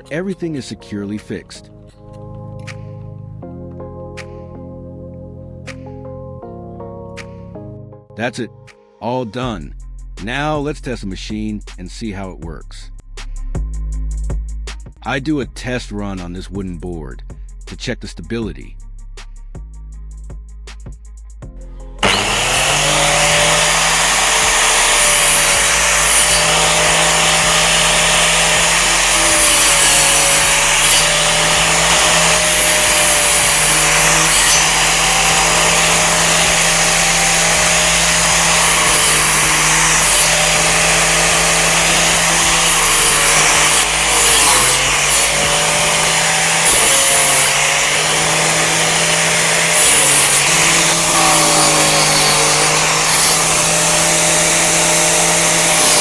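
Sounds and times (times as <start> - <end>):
angle grinder motor whine: 22.0 - 56.0
disc cutting wood rasps: 22.0 - 56.0.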